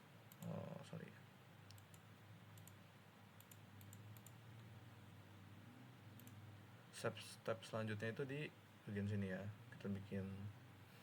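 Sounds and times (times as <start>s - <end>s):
computer mouse clicks: 0.3s - 0.6s, 1.7s - 2.8s, 3.4s - 4.7s, 6.2s - 6.4s.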